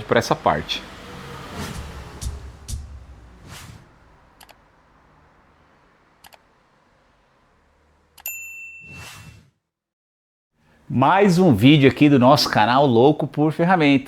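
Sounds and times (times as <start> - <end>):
bright metallic ding: 8.2 - 8.9.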